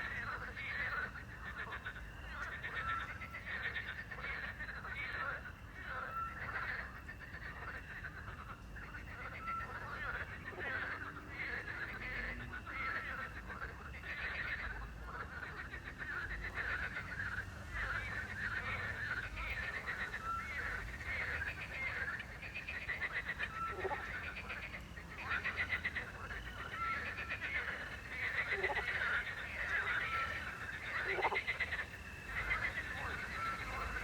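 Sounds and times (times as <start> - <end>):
crickets chirring: 0.0 - 34.0
frogs croaking: 0.0 - 34.0.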